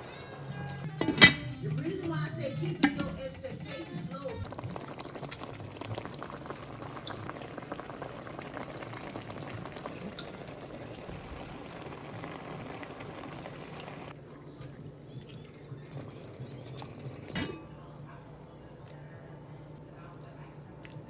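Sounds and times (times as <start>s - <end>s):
pot of greens boiling: 0.0s - 14.2s.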